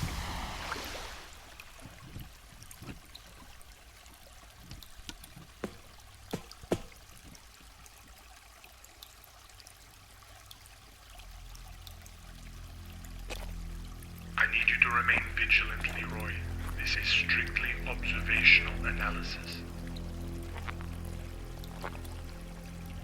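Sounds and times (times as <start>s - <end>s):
trickling water: 0.0s - 23.0s
low hum: 10.9s - 23.0s
low underwater rumble: 11.2s - 23.0s.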